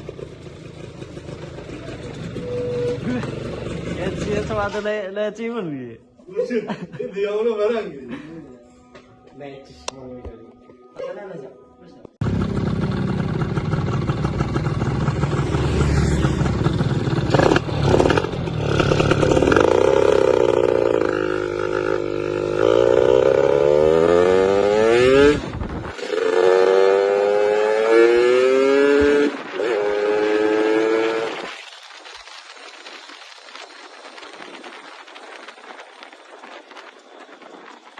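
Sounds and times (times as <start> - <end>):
motorcycle engine accelerating: 0.0 - 4.8, 12.2 - 31.8.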